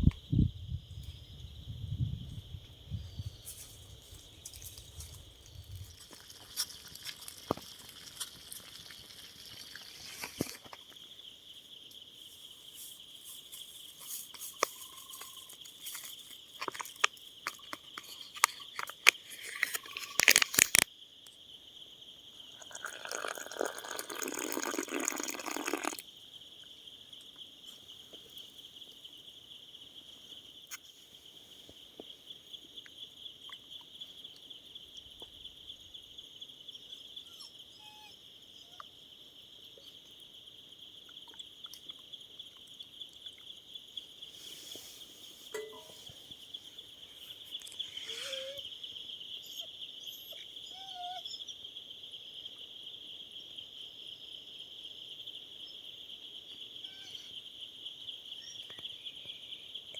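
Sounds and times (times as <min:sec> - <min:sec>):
insects trilling: 0:00.0 - 0:59.9.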